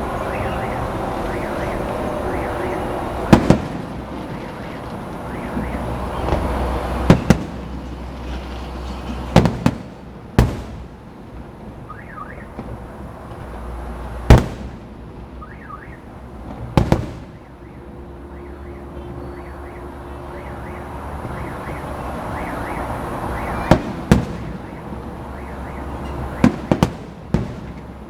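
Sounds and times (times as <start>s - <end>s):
fireworks booming: 0.0s - 18.0s, 20.4s - 28.0s.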